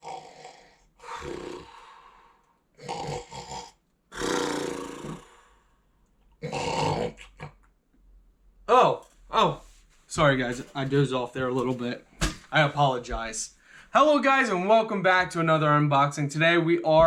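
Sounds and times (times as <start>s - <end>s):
man snoring: 0.0s - 5.8s, 6.4s - 7.2s
snorts: 0.0s - 5.8s, 6.4s - 7.6s.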